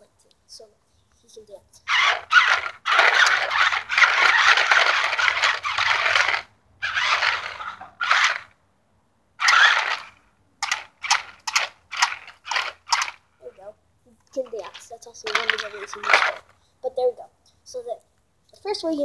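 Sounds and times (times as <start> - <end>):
toy car motor whirring: 1.8 - 8.5, 9.4 - 13.6, 14.4 - 16.5.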